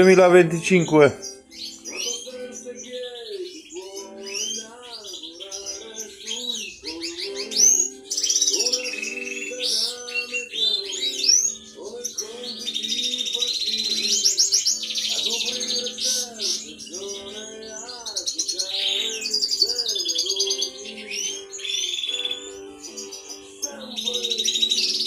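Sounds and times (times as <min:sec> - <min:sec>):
background music: 0:00.0 - 0:25.0
goldfinch singing: 0:00.0 - 0:25.0.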